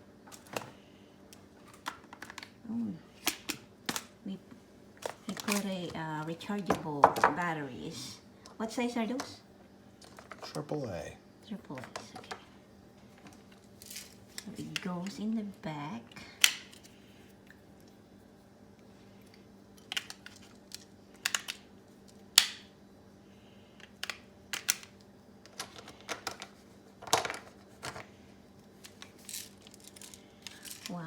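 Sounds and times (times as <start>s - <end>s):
faint steady hum: 0.0s - 31.0s
batteries clicking into compartment: 5.0s - 5.7s, 19.8s - 22.7s, 23.8s - 28.1s.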